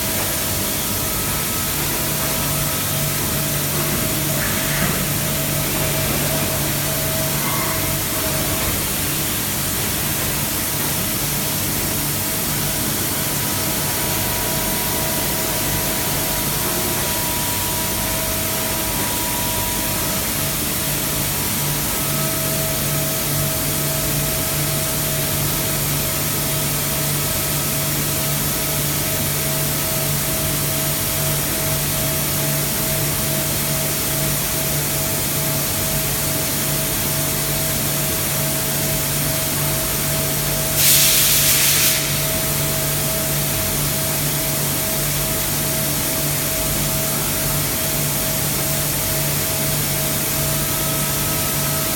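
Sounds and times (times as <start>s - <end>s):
machine hiss: 0.0s - 51.9s.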